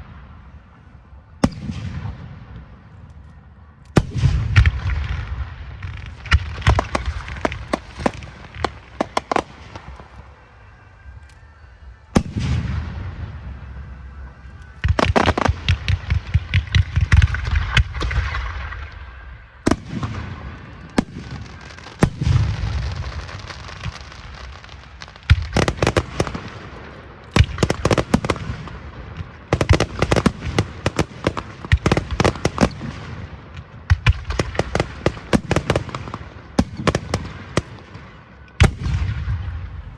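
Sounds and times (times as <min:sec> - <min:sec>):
fireworks bangs and crackles: 0:00.0 - 0:39.9
deep fireworks boom: 0:12.1 - 0:39.9.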